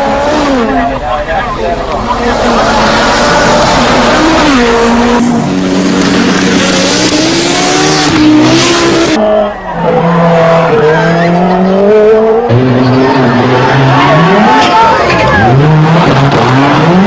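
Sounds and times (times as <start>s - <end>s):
rally car engines revving high: 0.0s - 17.0s.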